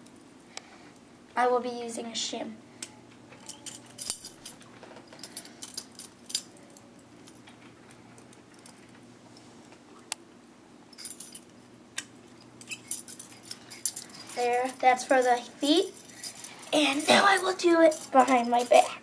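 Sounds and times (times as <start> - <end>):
handcuffs clicking and rattling: 3.4 - 7.5, 11.0 - 11.5, 12.6 - 19.0.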